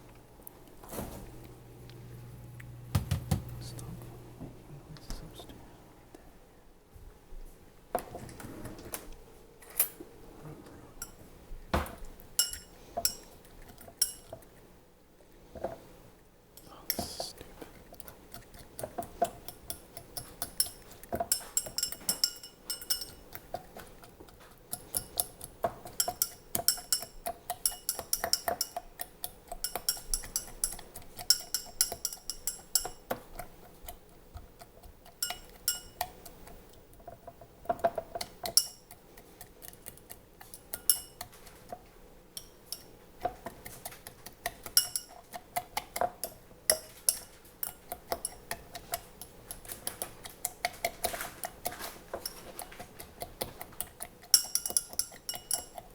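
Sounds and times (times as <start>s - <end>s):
clinks and taps of hard objects: 11.8s - 13.3s, 19.2s - 23.9s, 24.7s - 33.2s, 35.1s - 36.1s, 44.6s - 52.8s, 53.5s - 55.9s.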